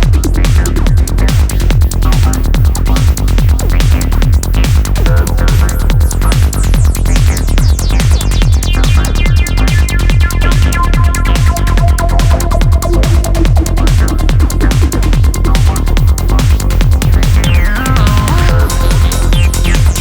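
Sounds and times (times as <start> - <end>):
electronic trance music: 0.0 - 20.0
kick drum: 0.0 - 20.0
synth melody: 5.0 - 20.0.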